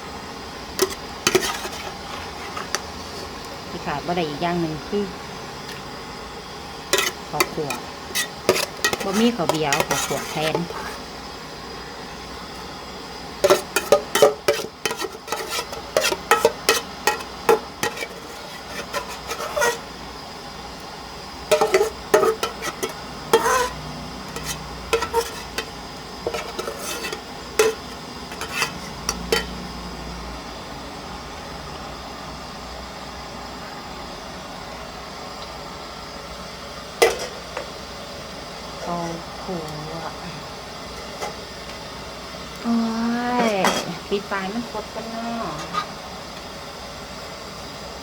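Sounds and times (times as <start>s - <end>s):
utensils clinking against cookware: 0.8s - 2.8s, 6.9s - 11.0s, 13.4s - 19.8s, 21.5s - 29.6s
utensils scraping cookware: 0.8s - 3.5s, 6.9s - 11.0s, 13.4s - 19.9s, 21.5s - 29.6s, 43.4s - 44.1s, 45.5s - 46.0s.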